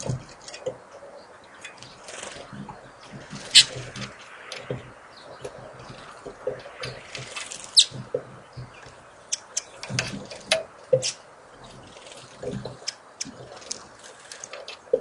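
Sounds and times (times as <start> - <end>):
small birds chipping: 0.0 - 15.0
soft low knocks: 2.5 - 13.6.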